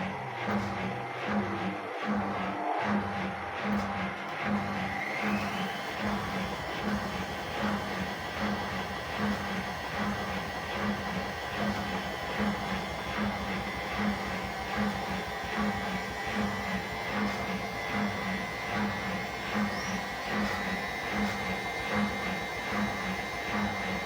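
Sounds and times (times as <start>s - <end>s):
washing machine spinning: 0.0s - 24.0s.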